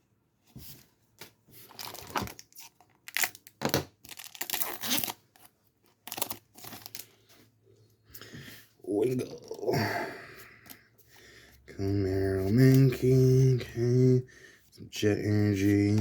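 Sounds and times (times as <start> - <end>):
foil wrapper tearing and crinkling: 1.7 - 7.1.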